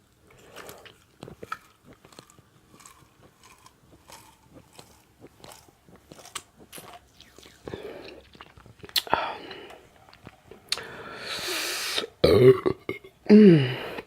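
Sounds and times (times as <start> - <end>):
person chewing with lip smacking: 0.3 - 10.9.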